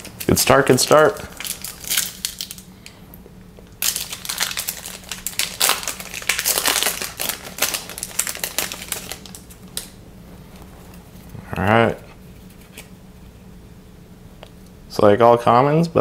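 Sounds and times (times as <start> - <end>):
foil pack crinkling: 0.0 - 3.0, 3.6 - 10.0.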